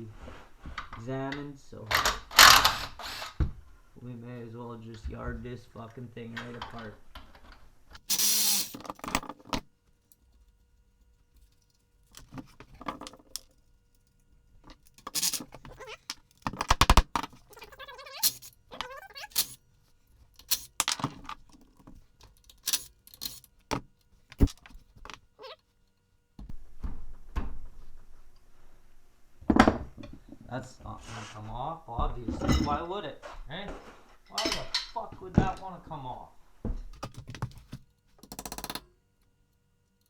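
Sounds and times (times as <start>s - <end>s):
metal tools and parts clinking: 1.9s - 3.4s, 6.4s - 9.5s, 11.4s - 16.6s, 17.2s - 19.6s, 20.4s - 23.6s, 34.3s - 35.0s.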